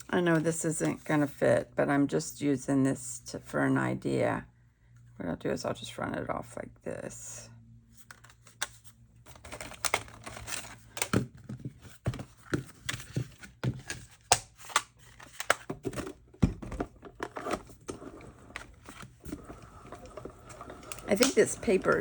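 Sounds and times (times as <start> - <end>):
paper crinkling and rustling: 8.0 - 16.0, 17.1 - 22.0.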